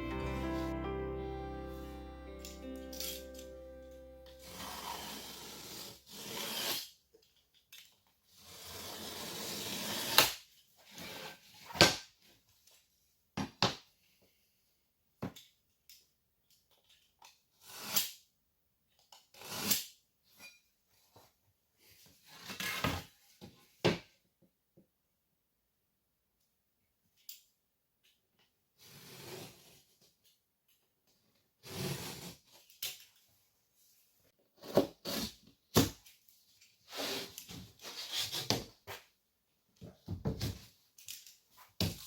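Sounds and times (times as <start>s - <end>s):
scraping gypsum board: 4.5s - 6.9s.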